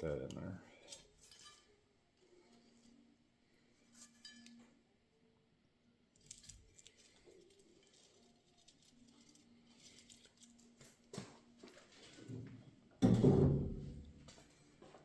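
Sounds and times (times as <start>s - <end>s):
metal parts tapping and scraping: 0.9s - 1.7s, 3.9s - 4.6s.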